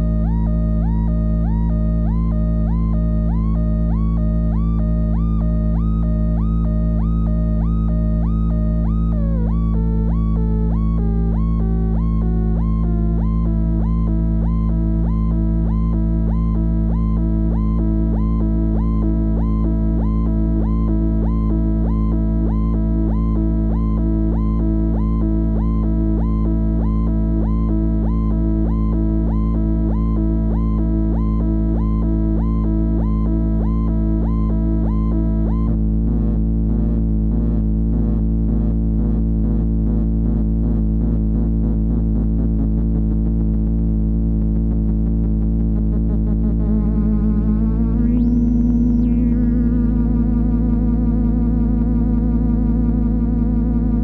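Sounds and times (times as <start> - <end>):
synth low drone: 0.0 - 54.0
swooping synth tone: 45.3 - 54.0.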